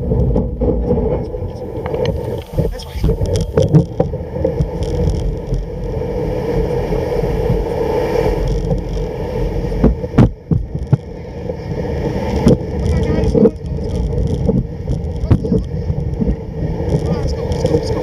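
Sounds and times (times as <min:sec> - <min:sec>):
sled runners sliding over snow: 0:00.0 - 0:18.0
sled frame knocks and rattles: 0:09.8 - 0:11.1.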